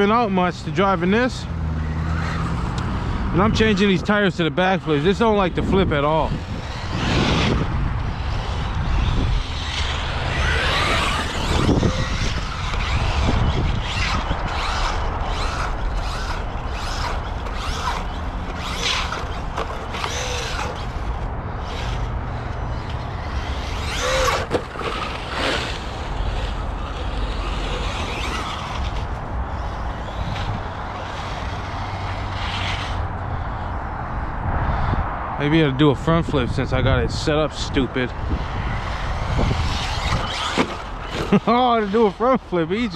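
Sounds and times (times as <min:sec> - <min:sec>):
rc truck motor bursts: 0:02.0 - 0:33.7, 0:38.2 - 0:42.9
tyres scrabbling on ground: 0:08.1 - 0:33.0, 0:38.9 - 0:42.9.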